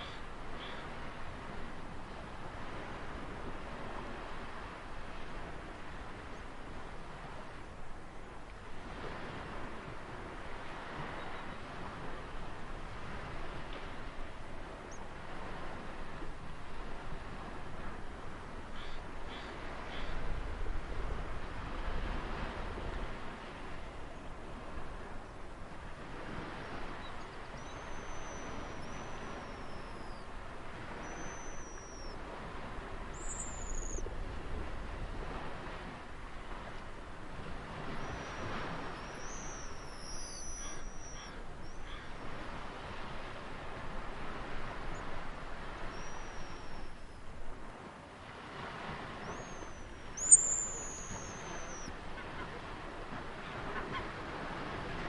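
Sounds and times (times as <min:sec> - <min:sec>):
ocean surf: 0:00.0 - 0:55.0
birds whistling: 0:27.0 - 0:30.3, 0:31.0 - 0:32.2, 0:33.2 - 0:34.0, 0:38.0 - 0:42.0, 0:45.9 - 0:47.0, 0:49.2 - 0:51.9.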